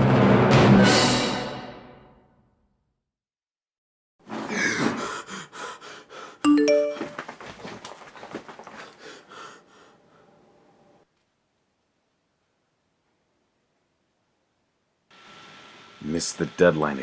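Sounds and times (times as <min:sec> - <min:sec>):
bright rising chime: 0:06.5 - 0:07.2.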